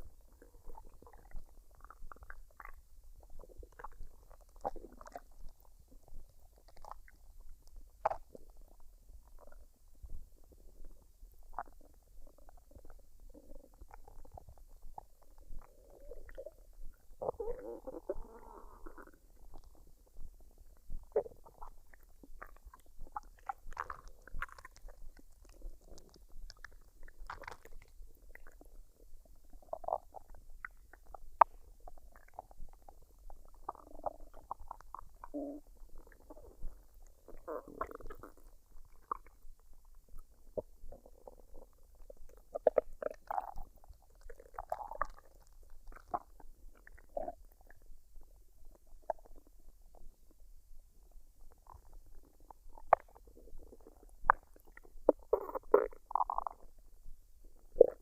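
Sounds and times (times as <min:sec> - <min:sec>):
stomach gurgling and rumbling: 0:00.0 - 0:58.0.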